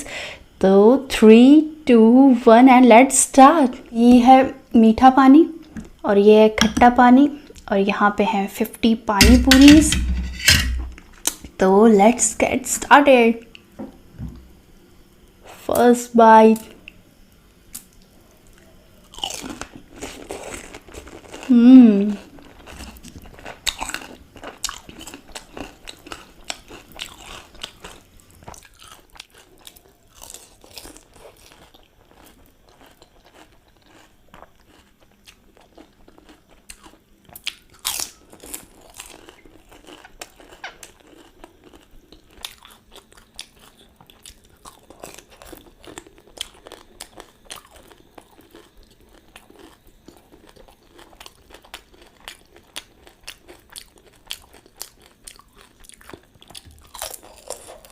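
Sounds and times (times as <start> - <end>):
chewing: 17.8 - 21.5, 22.1 - 57.9
crunchy food bites: 19.0 - 21.5, 22.2 - 57.9.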